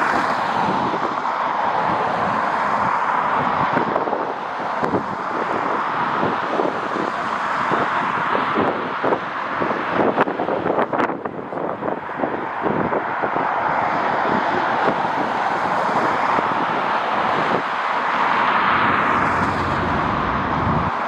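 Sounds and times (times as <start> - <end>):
wind buffeting microphone: 0.0 - 21.0
jet engine rush: 18.4 - 21.0.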